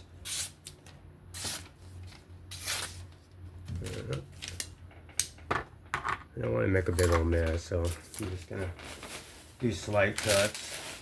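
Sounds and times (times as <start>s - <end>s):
paper rustling: 6.9s - 11.0s.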